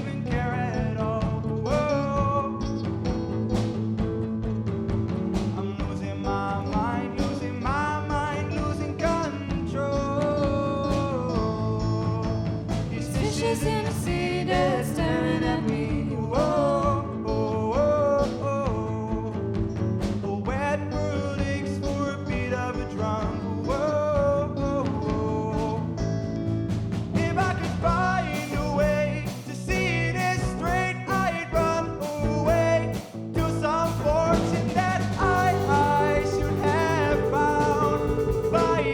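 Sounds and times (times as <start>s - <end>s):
band playing a steady beat: 0.0s - 17.0s, 23.2s - 38.9s
person singing: 13.1s - 19.2s, 27.2s - 38.9s
drum hits: 29.7s - 38.9s.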